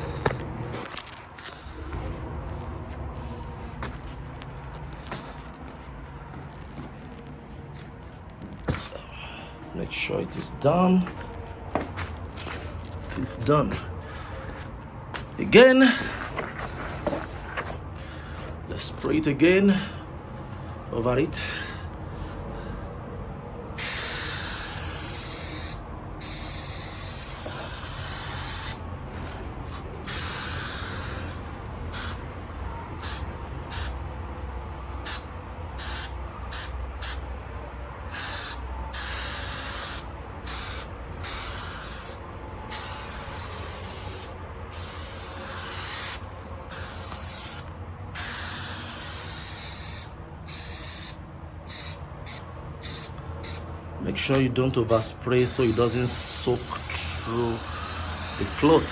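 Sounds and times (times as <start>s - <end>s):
aerosol can spraying: 23.8s - 28.8s, 29.7s - 32.2s, 33.0s - 34.0s, 35.1s - 37.2s, 38.1s - 53.7s, 55.4s - 58.9s.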